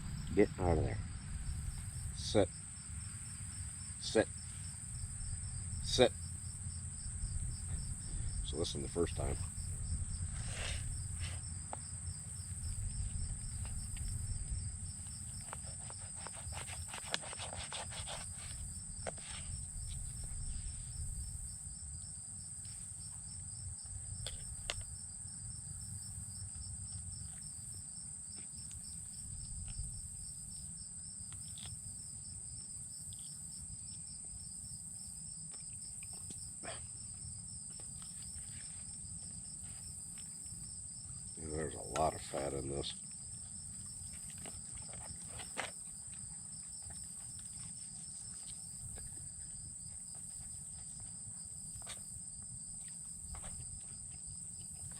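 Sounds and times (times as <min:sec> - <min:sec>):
low rumble: 0:00.0 - 0:02.4
insects trilling: 0:00.0 - 0:54.9.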